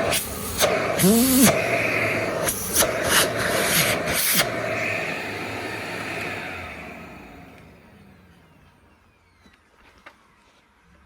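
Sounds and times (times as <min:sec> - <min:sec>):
rushing air surges: 0:00.0 - 0:08.3
vacuum cleaner running: 0:00.0 - 0:09.6.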